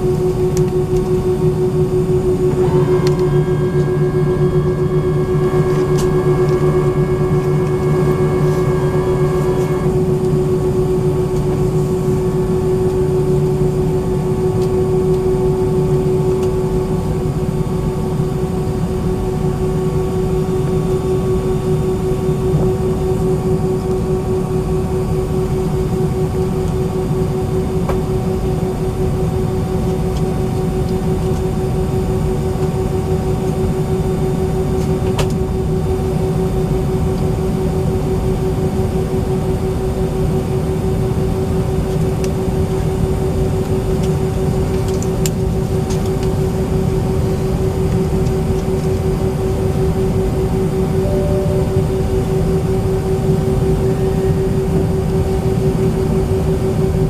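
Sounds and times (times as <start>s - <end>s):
air conditioning hum: 0.0s - 17.0s, 40.1s - 57.0s
jet engines idling: 0.0s - 57.0s
higher tones: 1.8s - 10.7s, 51.0s - 52.7s.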